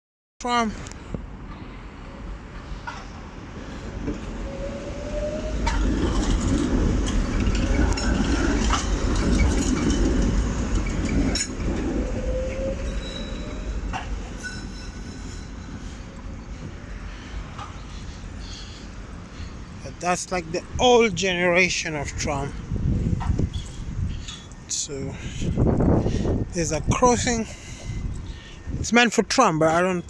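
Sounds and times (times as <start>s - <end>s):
tram rumbling past: 0.7s - 30.0s
wheels clacking over rail joints: 5.6s - 15.4s
faint thin wheel squeal: 12.2s - 13.8s.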